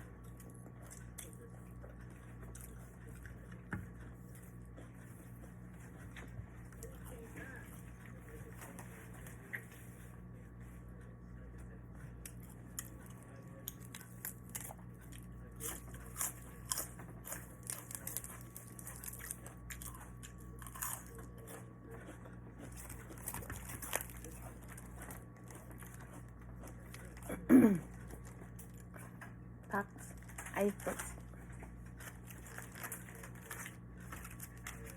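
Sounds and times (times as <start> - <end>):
person chewing crunchy food: 12.2 - 29.3, 30.0 - 34.9.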